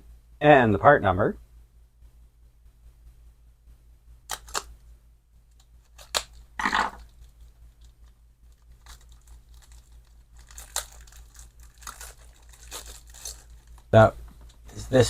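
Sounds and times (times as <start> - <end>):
packaging crinkling: 4.3 - 4.7, 5.8 - 14.0.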